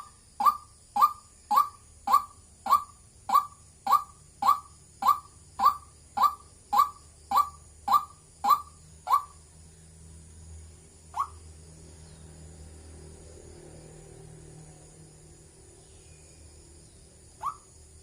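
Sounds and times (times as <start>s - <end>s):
bird calling wak wak: 0.0s - 9.4s, 11.1s - 11.4s, 17.4s - 17.7s.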